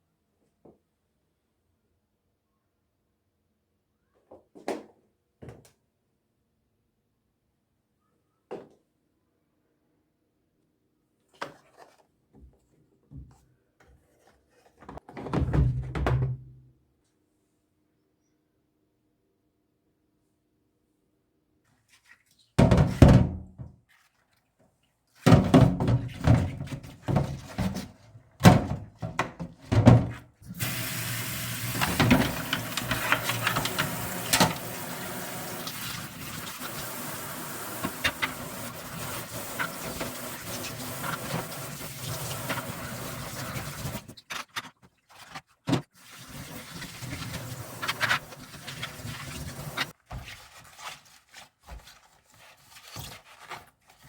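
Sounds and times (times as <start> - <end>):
tap water running: 30.5 - 44.2, 46.0 - 50.0.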